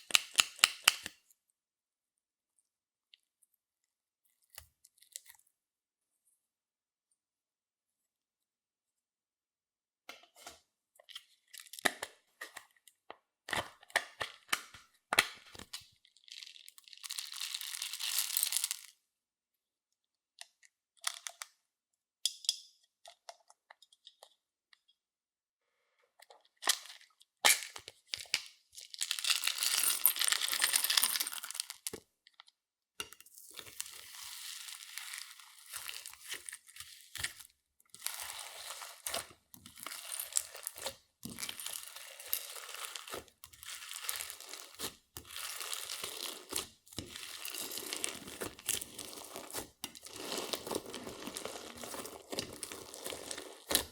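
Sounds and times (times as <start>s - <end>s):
slime squishing by hand: 33.6s - 53.9s.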